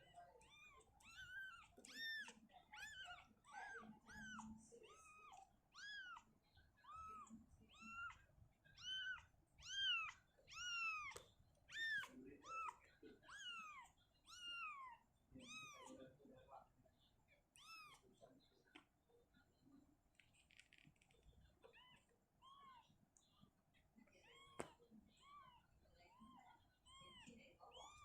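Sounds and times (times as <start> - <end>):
kitten mewing: 0.4 - 8.2, 8.8 - 15.9.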